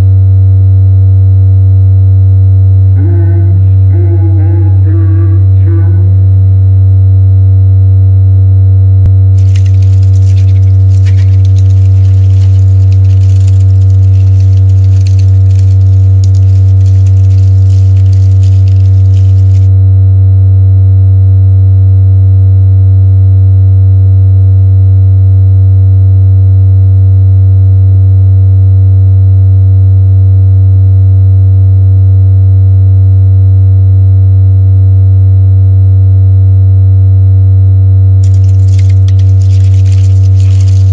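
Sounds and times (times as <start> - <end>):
low electronic drone tone: 0.0 - 25.2.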